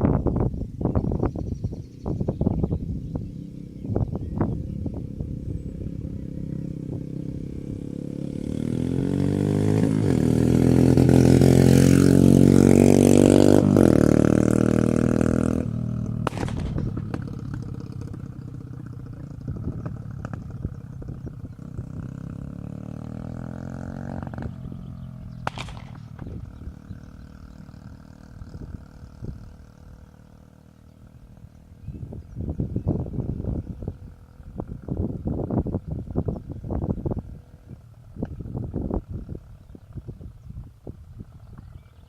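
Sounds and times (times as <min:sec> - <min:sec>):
motorcycle engine revving: 0:00.8 - 0:42.0
exhaust pops: 0:16.0 - 0:21.9, 0:25.3 - 0:27.4.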